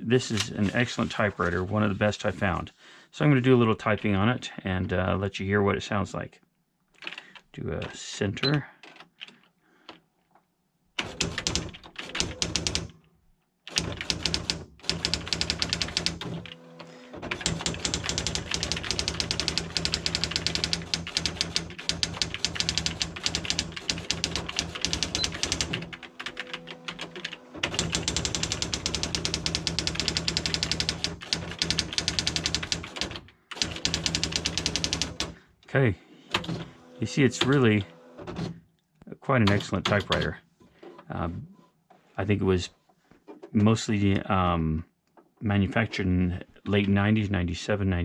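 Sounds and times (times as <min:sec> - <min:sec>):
typewriter printwheel strikes: 0:17.2 - 0:33.0.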